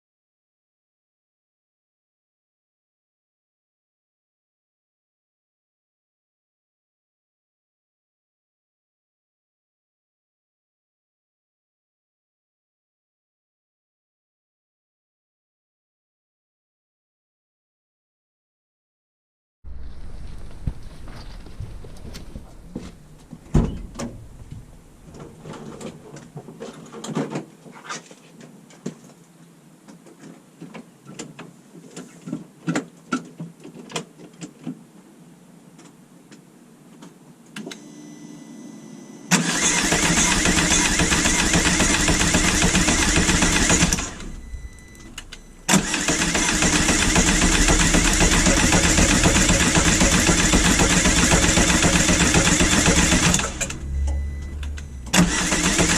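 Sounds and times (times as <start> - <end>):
loud mechanical running noise: 39.3 - 55.9.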